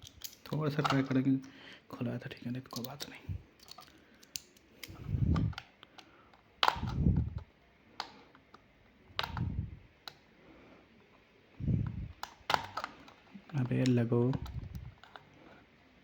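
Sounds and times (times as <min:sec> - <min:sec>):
plastic clicks and taps: 0:02.8 - 0:07.4, 0:09.2 - 0:10.2.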